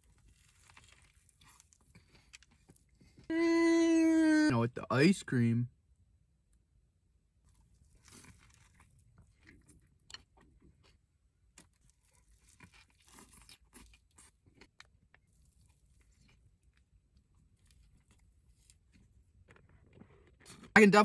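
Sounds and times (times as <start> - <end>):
person chewing crunchy food: 0.0 - 3.3, 7.5 - 20.7.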